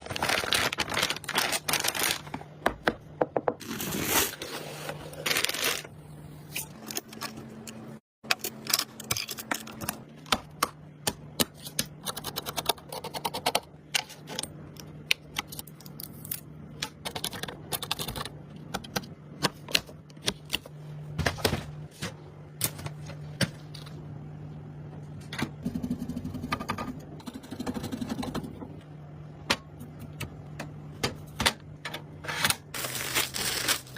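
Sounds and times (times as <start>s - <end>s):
computer parts clicking and scraping: 6.6s - 10.1s.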